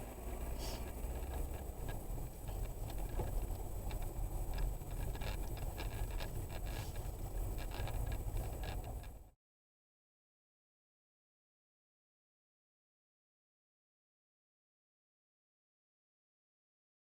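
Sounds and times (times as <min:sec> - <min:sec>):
road and engine rumble: 0:00.0 - 0:09.4
small rattles and ticks: 0:00.8 - 0:09.3.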